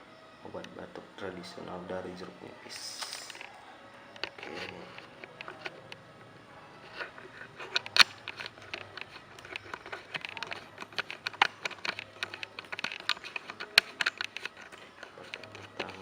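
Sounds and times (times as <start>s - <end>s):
small objects clicking and tapping: 2.7s - 3.6s, 4.2s - 6.0s, 6.8s - 16.0s.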